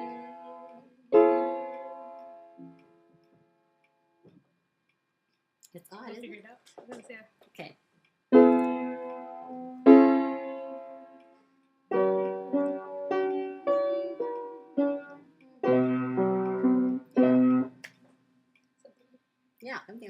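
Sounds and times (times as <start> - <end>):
piano chords: 0.0 - 2.8, 8.3 - 11.2, 11.9 - 17.8.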